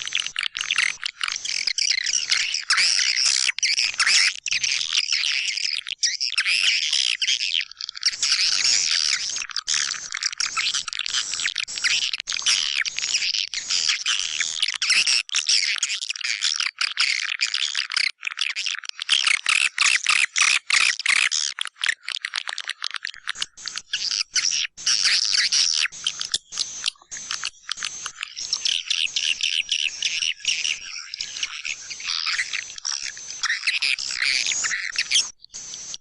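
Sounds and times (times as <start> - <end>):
swiftlets twittering: 26.0 - 36.0.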